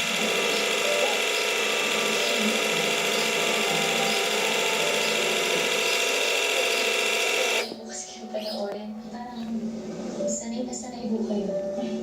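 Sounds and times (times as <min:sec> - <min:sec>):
linear actuator grinding rattle: 0:00.0 - 0:07.6.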